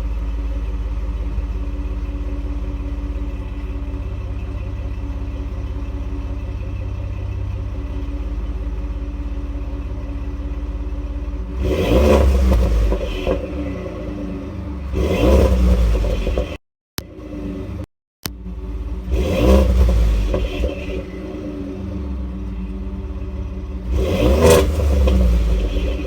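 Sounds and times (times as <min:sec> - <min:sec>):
truck engine idling and revving: 0:00.0 - 0:26.0.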